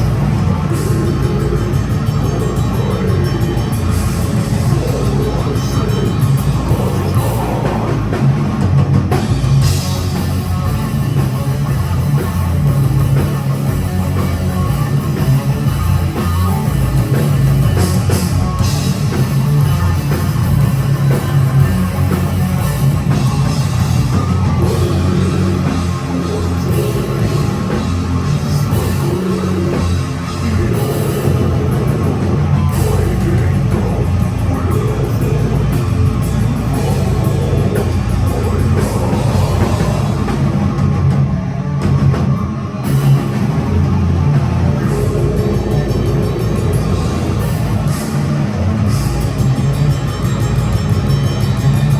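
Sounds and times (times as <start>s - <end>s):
death metal band playing: 0.0s - 51.9s.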